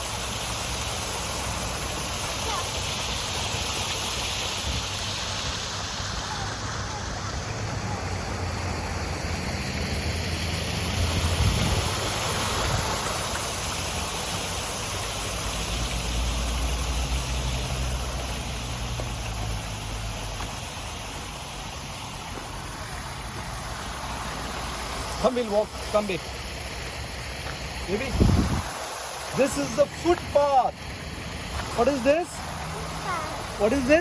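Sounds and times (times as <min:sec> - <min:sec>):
fountain water falling: 0:00.0 - 0:34.0.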